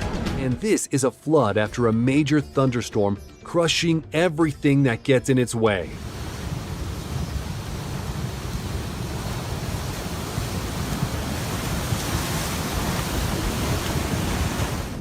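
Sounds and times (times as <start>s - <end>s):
floodwater rushing: 5.9s - 15.0s.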